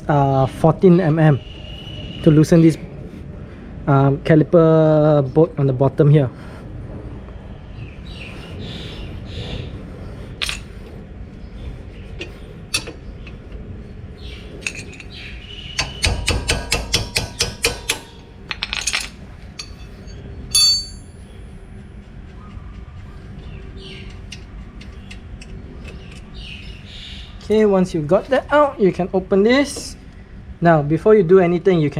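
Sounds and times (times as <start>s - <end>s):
ringing metal clink: 15.8s - 21.2s
metal tool clinks: 18.5s - 21.2s.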